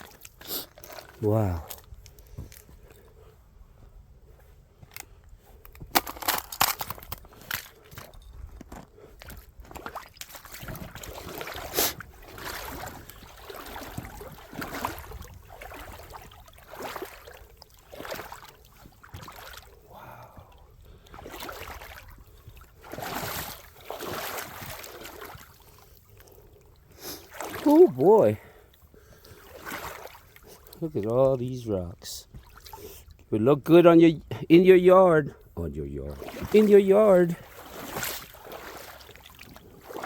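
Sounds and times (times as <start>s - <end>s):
footsteps on wet gravel: 0.0s - 20.5s, 36.0s - 40.0s
water sloshing underfoot: 0.0s - 33.8s, 35.3s - 40.0s.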